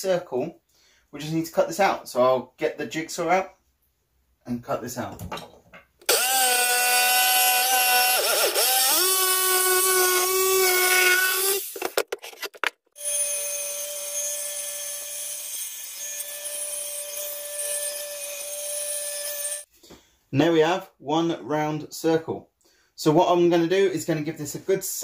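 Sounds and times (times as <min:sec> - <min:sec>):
electric saw cutting wood: 0:06.1 - 0:11.9, 0:13.0 - 0:19.7.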